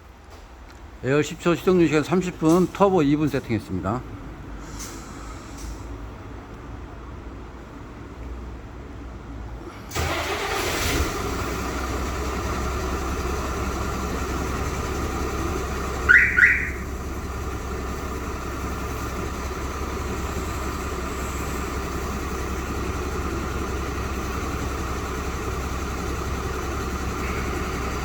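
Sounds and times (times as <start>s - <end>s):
diesel engine starting and idling: 9.4s - 28.0s
alarm siren chirps: 15.9s - 17.1s.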